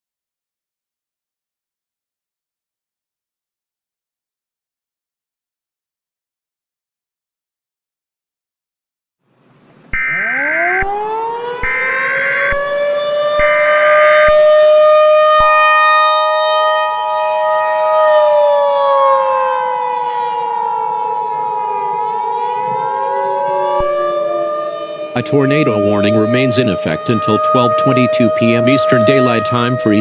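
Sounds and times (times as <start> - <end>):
warning siren wailing: 9.9 - 30.0
two-tone attention signal: 25.2 - 30.0.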